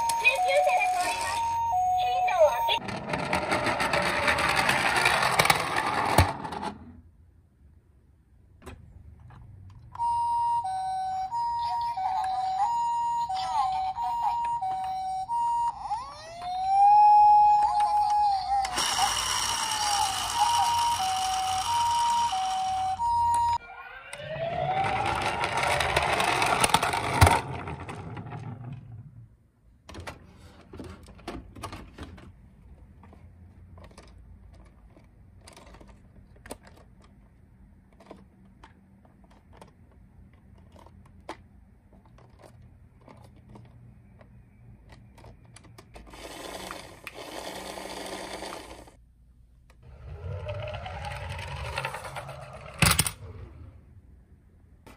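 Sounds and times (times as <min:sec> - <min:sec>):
toy ambulance siren hi-lo: 0:00.0 - 0:02.8, 0:10.0 - 0:26.3
siren rising in pitch: 0:10.0 - 0:26.0.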